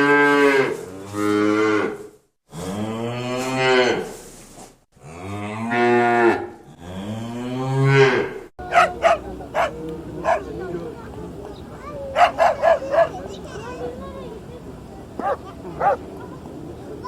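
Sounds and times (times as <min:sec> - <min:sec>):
cattle mooing: 0:15.2 - 0:16.0.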